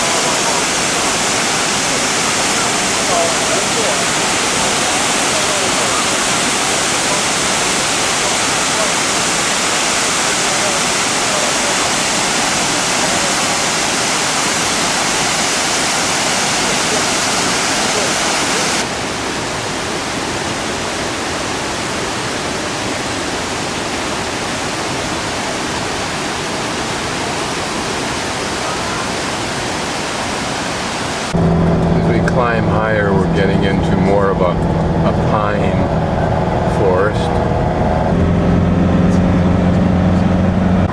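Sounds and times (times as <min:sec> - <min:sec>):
mountain stream rushing: 0:00.0 - 0:31.5.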